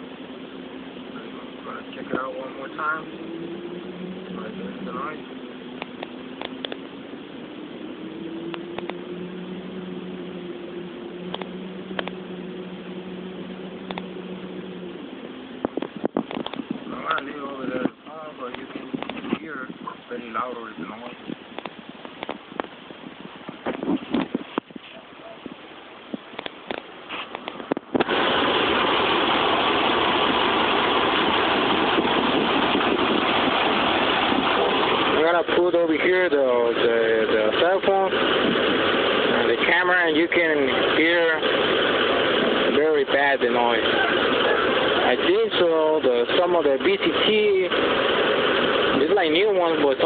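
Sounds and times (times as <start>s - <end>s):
truck engine idling: 24.9s - 50.0s.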